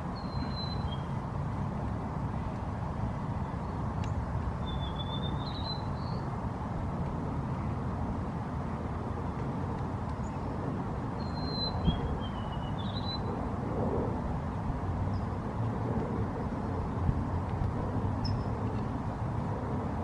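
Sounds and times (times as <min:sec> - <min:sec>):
bird chirping: 0:00.2 - 0:01.1, 0:04.6 - 0:06.2, 0:11.2 - 0:13.3.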